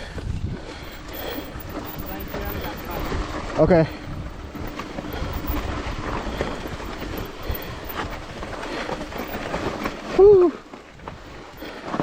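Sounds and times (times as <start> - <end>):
wind on microphone: 0.0 - 11.6
bike rattles and clicks: 0.0 - 12.0
bike tyres rolling on gravel: 0.0 - 12.0.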